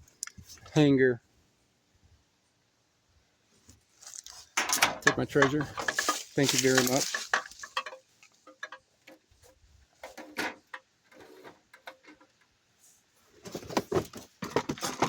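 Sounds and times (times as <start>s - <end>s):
small objects clicking and knocking: 4.1s - 9.2s.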